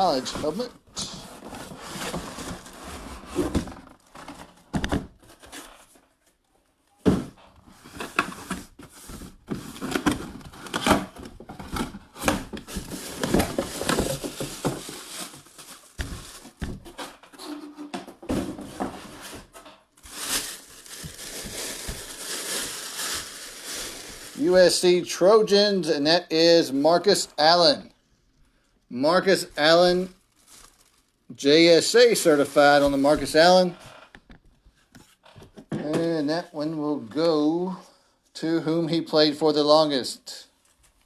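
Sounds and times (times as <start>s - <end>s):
packaging crinkling and tearing: 8.0s - 17.2s, 19.1s - 24.6s, 29.3s - 31.2s.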